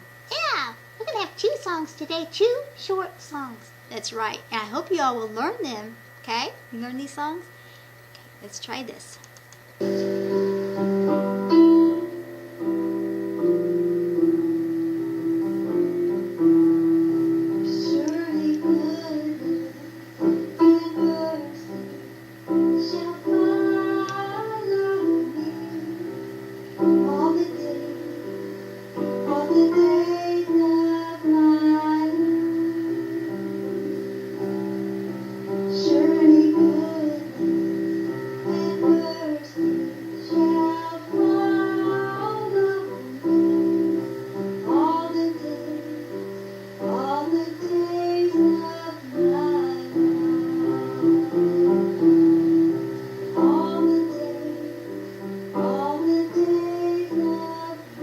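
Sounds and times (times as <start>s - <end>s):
electronic keyboard chords: 9.8s - 58.0s
woman singing: 17.5s - 34.0s, 35.7s - 37.8s, 38.4s - 58.0s.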